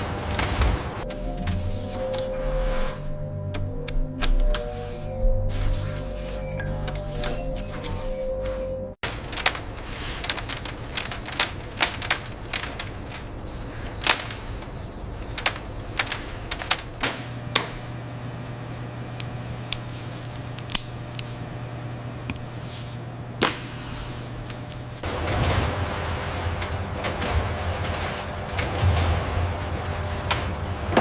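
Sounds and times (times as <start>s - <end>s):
low hum: 0.0s - 31.0s
factory machinery clicking and clacking: 6.6s - 17.9s, 24.5s - 31.0s.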